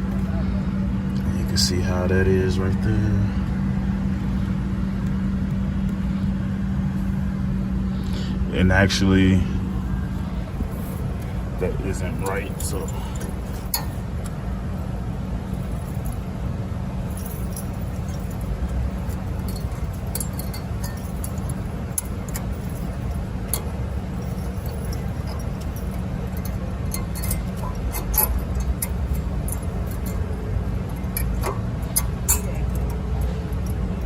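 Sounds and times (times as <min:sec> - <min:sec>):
low background rumble: 0:00.0 - 0:34.0
metallic clicks of brake hardware: 0:12.0 - 0:14.4, 0:17.1 - 0:34.0.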